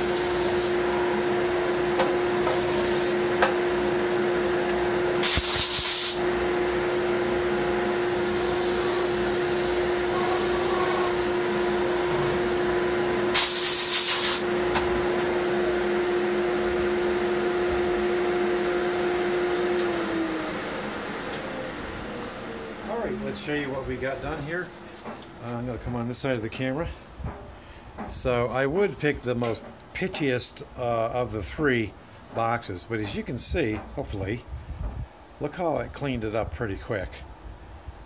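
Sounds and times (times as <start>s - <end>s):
electric sander humming: 6.1s - 13.4s, 14.4s - 24.8s.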